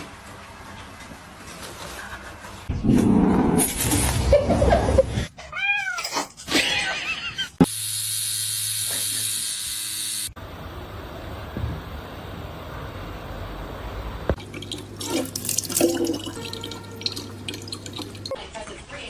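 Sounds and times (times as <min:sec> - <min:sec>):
cat meowing: 0:05.4 - 0:06.9.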